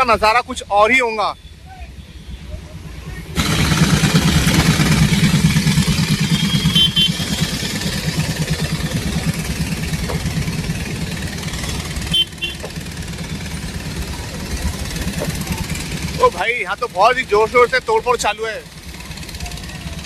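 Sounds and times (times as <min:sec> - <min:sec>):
vehicle engine running: 0:02.3 - 0:20.0.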